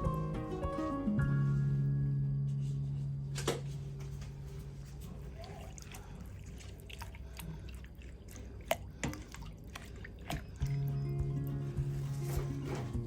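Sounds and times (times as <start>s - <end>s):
music: 0.0s - 4.1s, 10.6s - 13.0s
light clicks and drips: 5.4s - 11.6s.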